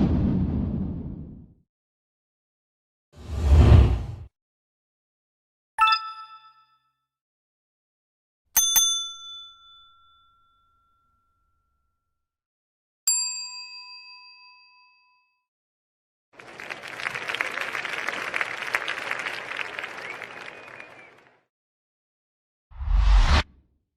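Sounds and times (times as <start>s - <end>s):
bell ringing: 5.8s - 6.7s
crowd applauding: 16.4s - 21.4s.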